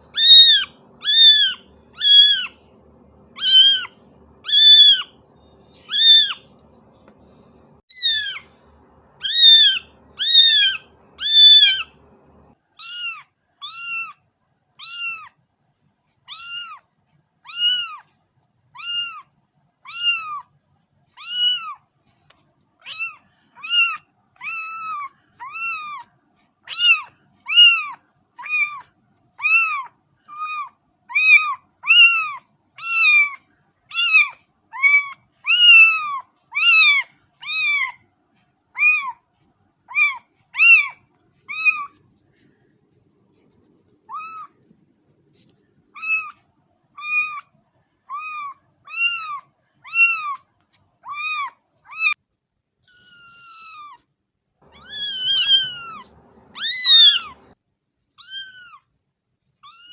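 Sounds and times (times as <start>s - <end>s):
cat meowing: 0.0s - 2.6s, 3.2s - 5.2s, 5.8s - 6.5s, 7.9s - 8.6s, 9.2s - 12.0s, 12.8s - 14.2s, 14.8s - 15.3s, 16.3s - 16.8s, 17.5s - 18.1s, 18.8s - 19.3s, 19.9s - 20.5s, 21.2s - 21.8s, 22.8s - 26.1s, 26.7s - 28.8s, 29.4s - 38.0s, 38.8s - 39.2s, 39.9s - 42.0s, 44.1s - 44.6s, 46.0s - 46.4s, 47.0s - 47.5s, 48.1s - 50.4s, 51.0s - 52.2s, 52.9s - 54.0s, 54.7s - 57.6s, 58.2s - 58.9s, 59.6s - 59.9s.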